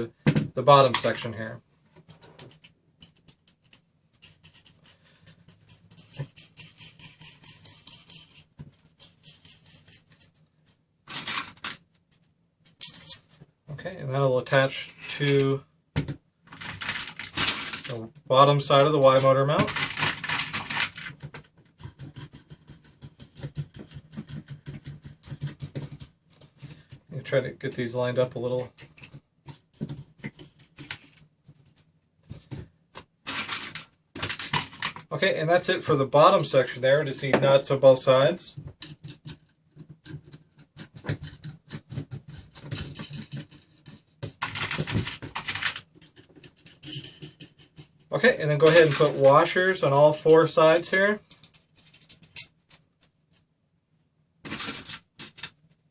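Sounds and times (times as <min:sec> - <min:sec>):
nut spinning on threaded rod: 0:05.5 - 0:08.4.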